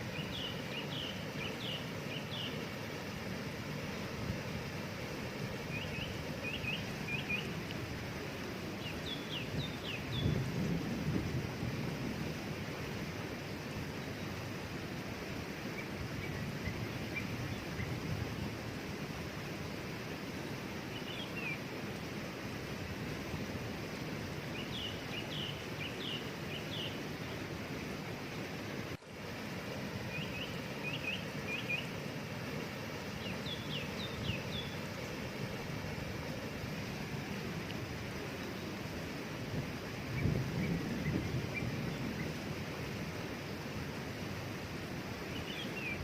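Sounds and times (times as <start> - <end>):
songbird chirping: 0.0 - 3.2, 3.8 - 10.8, 15.6 - 18.2, 20.4 - 21.7, 24.4 - 27.9, 29.9 - 38.9, 45.2 - 46.0
waterfall rushing: 0.0 - 46.0.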